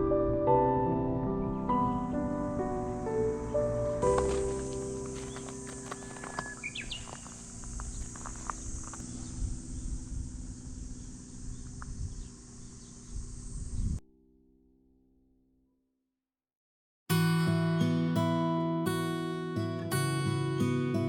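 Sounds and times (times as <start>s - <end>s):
bird chirp: 1.7s - 14.0s
insect-like hiss: 1.8s - 14.0s.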